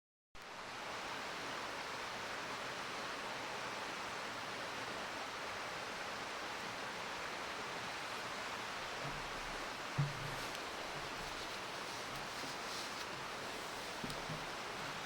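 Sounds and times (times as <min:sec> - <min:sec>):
river water rushing over rocks: 0:00.6 - 0:15.0.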